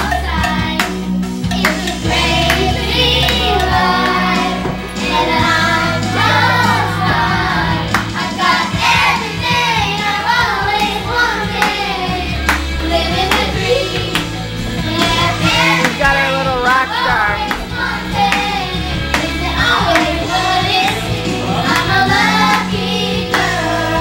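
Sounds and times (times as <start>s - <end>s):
hand clapping: 0.0s - 5.2s, 7.9s - 8.4s, 11.6s - 24.0s
loud band backing track: 0.0s - 24.0s
voices singing along: 0.0s - 24.0s.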